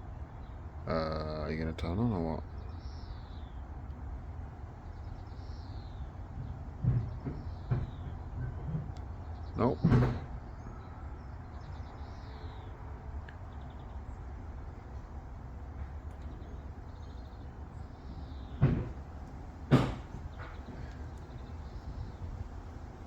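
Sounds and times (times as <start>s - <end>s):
sharp knocks: 6.4s - 9.0s, 9.7s - 10.3s, 18.4s - 20.9s
faint bird chirps: 10.5s - 15.2s.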